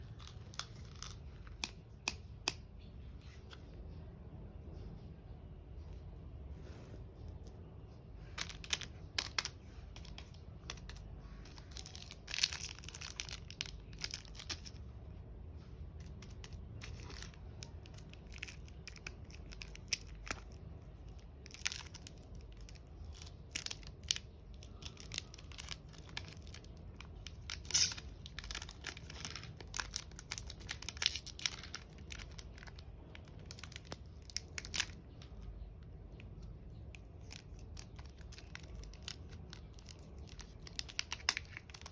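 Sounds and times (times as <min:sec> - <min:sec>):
wrappers tearing and crinkling: 0:10.8 - 0:14.8, 0:16.1 - 0:35.2, 0:37.0 - 0:41.9.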